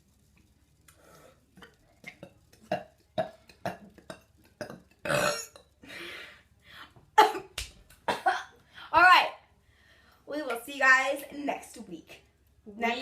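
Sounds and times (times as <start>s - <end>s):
girl burping: 2.7s - 5.6s.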